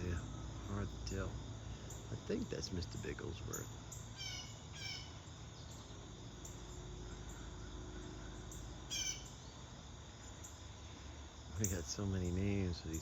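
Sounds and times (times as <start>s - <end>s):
crickets and insects chirring: 0.0s - 13.0s
bird call: 3.0s - 5.9s, 6.5s - 9.6s.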